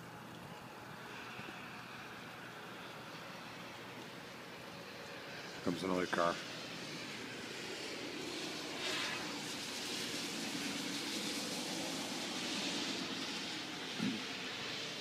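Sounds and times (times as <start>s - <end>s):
steady rain: 0.0s - 15.0s
car tyres hissing on wet road: 0.7s - 15.0s.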